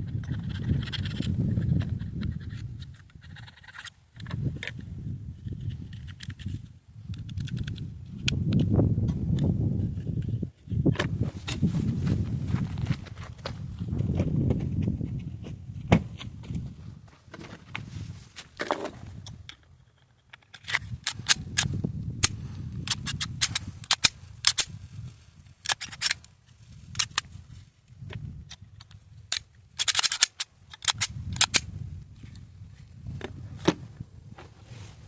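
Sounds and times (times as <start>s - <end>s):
pistol parts clicking: 0.2s - 4.8s, 5.5s - 8.7s, 19.2s - 24.8s, 25.6s - 26.3s, 26.9s - 27.3s, 28.5s - 31.8s.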